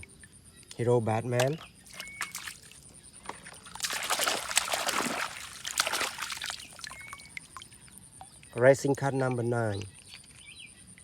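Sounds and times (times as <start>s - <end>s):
water splashing and trickling: 1.2s - 8.3s.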